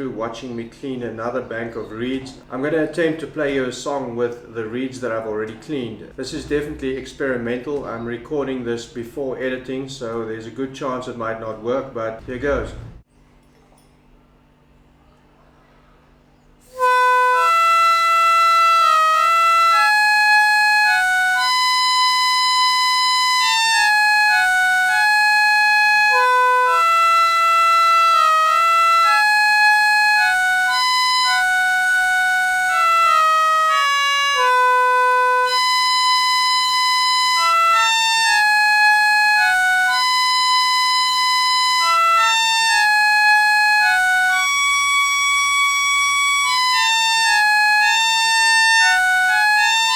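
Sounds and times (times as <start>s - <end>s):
reedy notes playing a melody: 16.7s - 49.9s.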